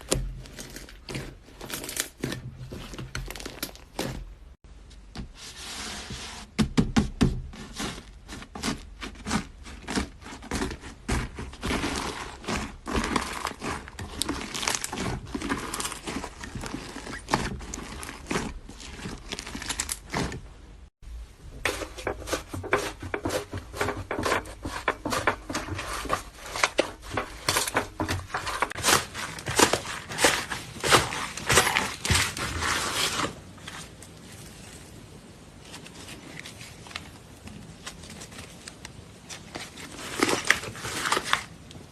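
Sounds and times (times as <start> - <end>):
slime crust crackling: 7.8 - 20.5.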